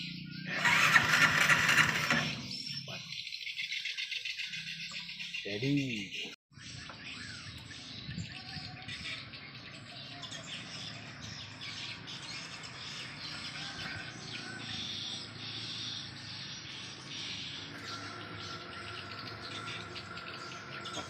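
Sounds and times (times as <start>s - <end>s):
birds chirping: 0.0s - 21.0s
high-pitched outdoor chorus: 9.3s - 21.0s.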